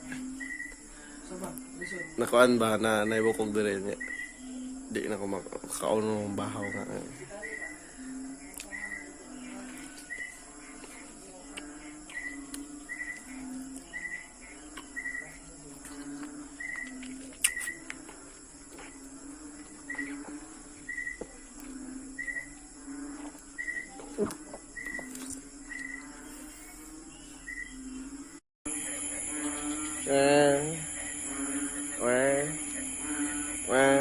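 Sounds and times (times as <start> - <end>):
low cooing calls: 19.7 - 34.0.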